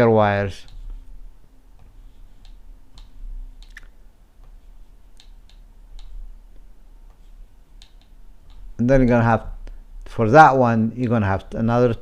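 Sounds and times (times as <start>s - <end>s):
faint clicks and taps: 1.7s - 8.8s.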